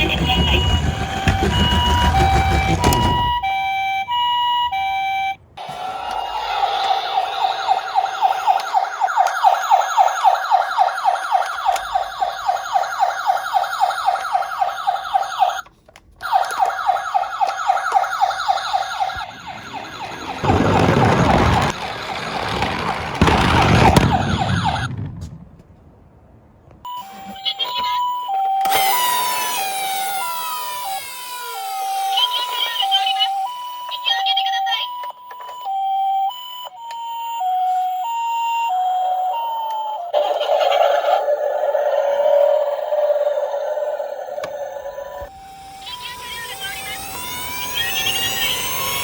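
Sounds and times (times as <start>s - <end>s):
bursts of rushing noise: 0.0s - 3.5s, 19.3s - 26.4s
electronic toy siren: 0.0s - 22.2s, 26.9s - 49.0s.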